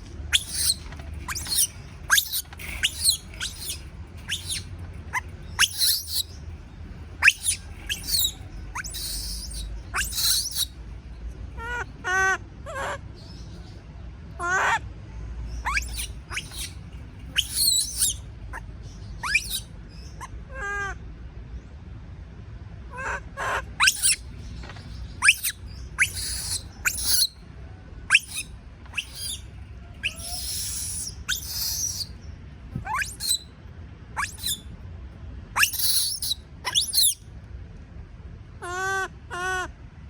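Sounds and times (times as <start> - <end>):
baby monkey crying calls: 0.3 - 6.4, 7.2 - 10.8, 11.6 - 13.0, 14.4 - 14.8, 15.6 - 18.6, 19.2 - 21.0, 22.9 - 24.3, 25.2 - 27.4, 28.1 - 32.2, 32.8 - 33.5, 34.2 - 34.6, 35.6 - 37.2, 38.6 - 39.7
harsh monkey screams: 0.3 - 6.4, 7.2 - 10.7, 15.6 - 18.2, 19.2 - 21.0, 22.9 - 24.3, 25.2 - 27.4, 28.1 - 32.1, 32.8 - 33.5, 34.2 - 34.6, 35.6 - 37.2.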